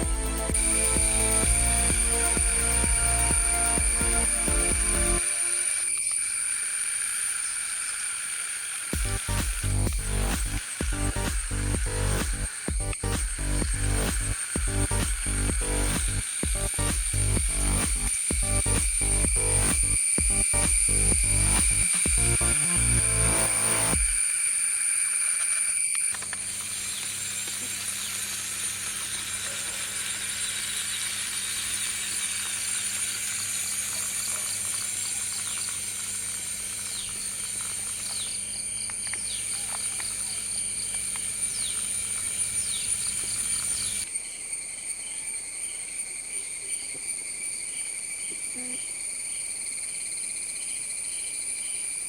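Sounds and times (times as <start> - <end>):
electronic music: 0.0 - 6.0, 9.0 - 24.2
insects trilling: 0.6 - 9.6, 12.4 - 52.0.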